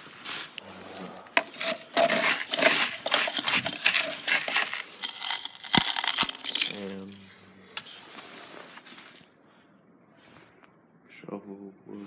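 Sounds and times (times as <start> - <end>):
clattering crunching knocks: 1.4 - 7.3.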